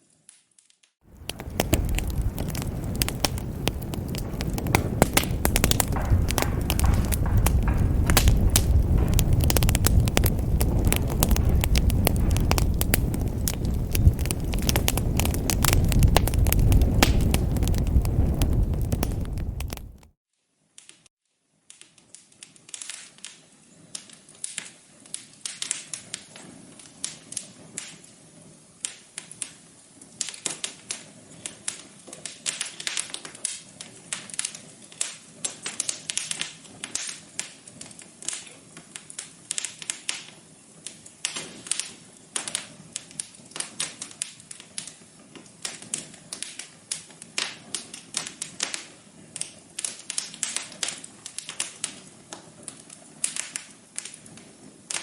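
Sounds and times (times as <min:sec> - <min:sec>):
wood fire crackling: 0:01.0 - 0:20.2, 0:22.0 - 0:55.0.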